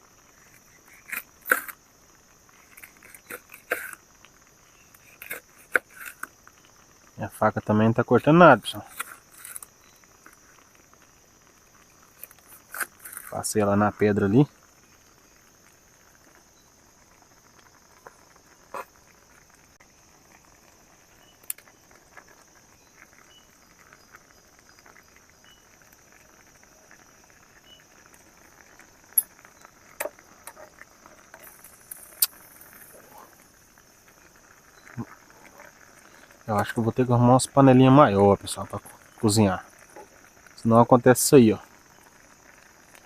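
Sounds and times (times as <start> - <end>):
insects chirping: 0.0 - 43.0
cooking clicks and knocks: 27.7 - 33.3.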